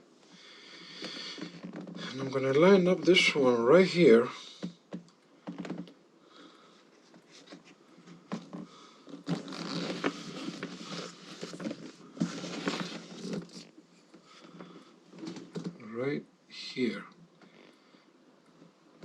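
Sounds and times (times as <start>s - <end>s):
rustling and scraping parts: 6.8s - 15.8s.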